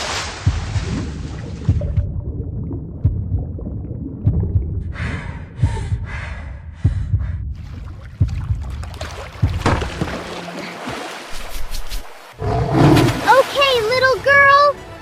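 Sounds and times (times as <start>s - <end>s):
heartbeat thumps: 0.4s - 10.2s
gasping panting breaths: 4.9s - 7.6s.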